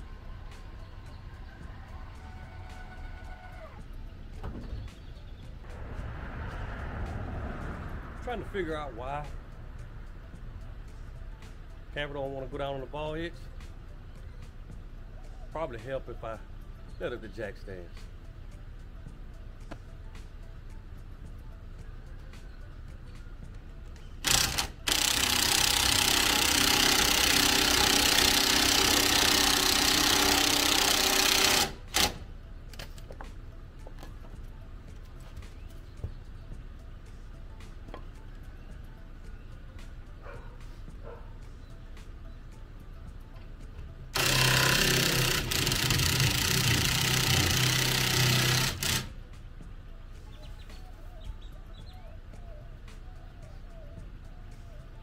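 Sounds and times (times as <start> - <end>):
electric motor running: 24.2 - 32.3, 44.2 - 49.2.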